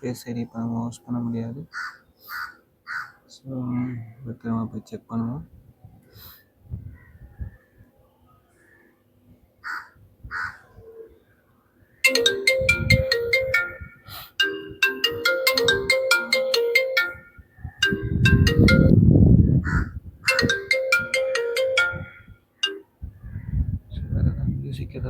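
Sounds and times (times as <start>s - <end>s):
crow cawing: 1.7s - 3.2s, 9.6s - 10.6s
phone ringtone chiming: 12.1s - 19.1s, 20.3s - 22.8s.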